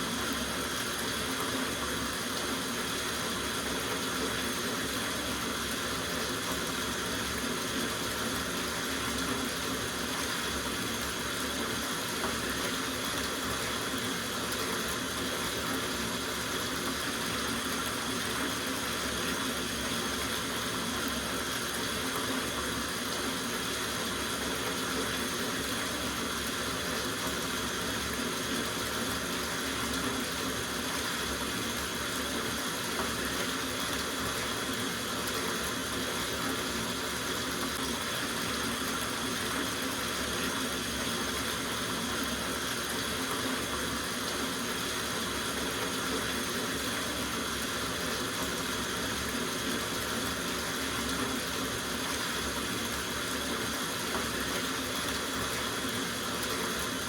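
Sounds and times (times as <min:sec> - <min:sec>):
tap water running into bathtub: 0:00.0 - 0:57.0.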